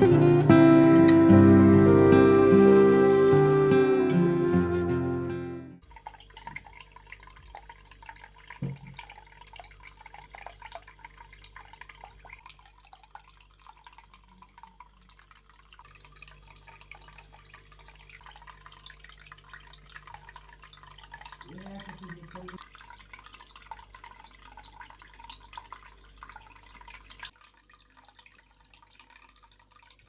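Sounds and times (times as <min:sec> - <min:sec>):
fountain water trickling: 0:05.8 - 0:30.0
soft knock: 0:08.6 - 0:09.0.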